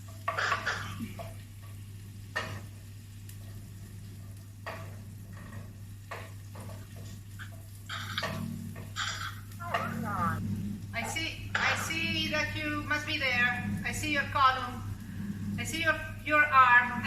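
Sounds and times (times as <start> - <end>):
food sizzling in a pan: 0.0 - 17.0
spoon stirring and scraping pan: 3.4 - 10.0.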